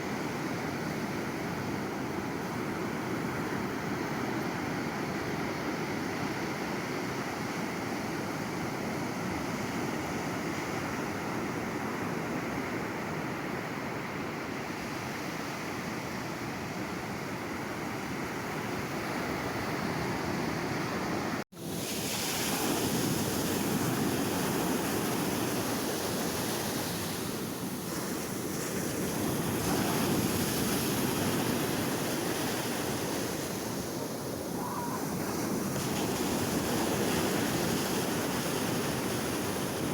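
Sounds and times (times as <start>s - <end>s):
sea waves washing onto shore: 17.9s - 39.9s.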